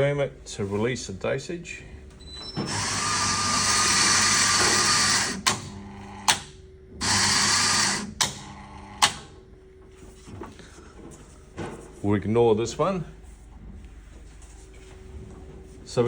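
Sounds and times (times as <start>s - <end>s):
coffee grinder motor running: 2.7s - 6.4s, 7.0s - 9.0s.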